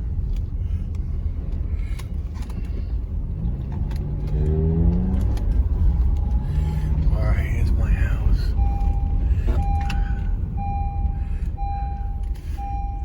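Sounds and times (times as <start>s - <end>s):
car road rumble in snow: 0.0s - 13.0s
car engine revving up: 2.2s - 11.0s.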